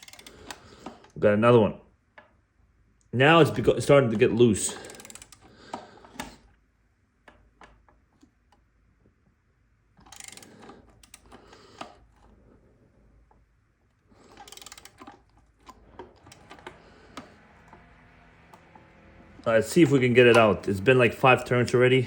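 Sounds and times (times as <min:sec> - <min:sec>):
ratchet wrench clicking: 0:00.0 - 0:01.0, 0:04.7 - 0:05.5, 0:10.0 - 0:11.4, 0:14.3 - 0:17.8.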